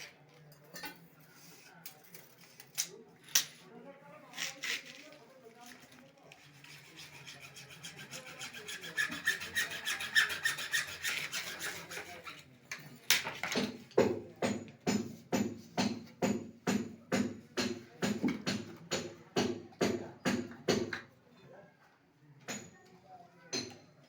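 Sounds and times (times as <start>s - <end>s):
hand tool scraping metal pipe: 6.3s - 12.5s.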